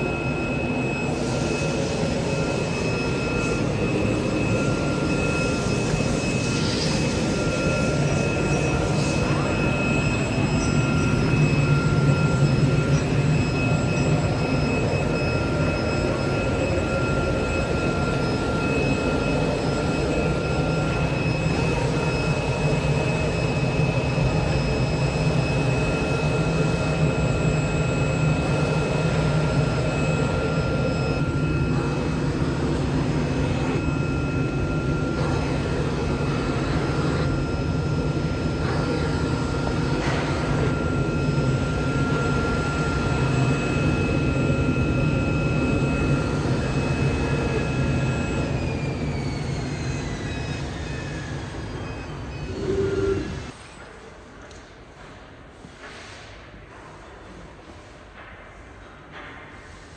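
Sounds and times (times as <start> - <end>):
cutting machine drone: 0.0 - 53.6
thin high whine: 0.0 - 53.7.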